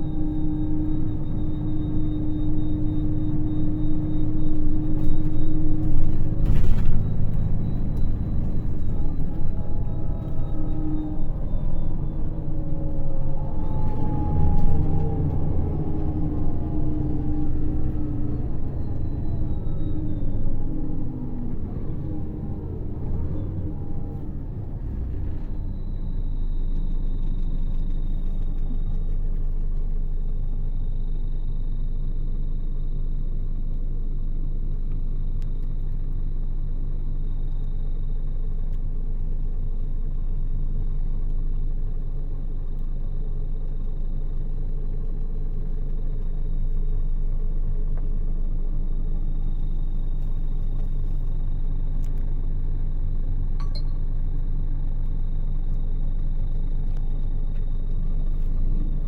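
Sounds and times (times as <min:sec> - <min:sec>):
diesel engine rumbling: 0:00.0 - 0:59.0
faint high engine whine: 0:00.0 - 0:59.0.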